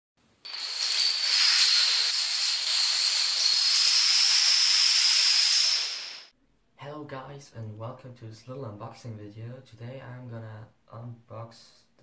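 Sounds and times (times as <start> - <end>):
loud hiss with high whistling tone: 0.4 - 6.3.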